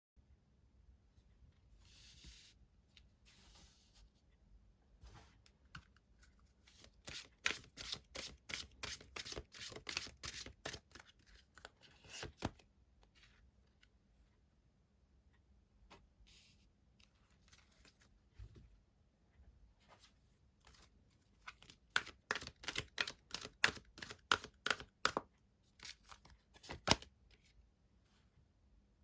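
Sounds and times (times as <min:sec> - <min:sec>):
cards rustling: 0:06.6 - 0:12.6, 0:21.5 - 0:25.2, 0:25.8 - 0:27.1.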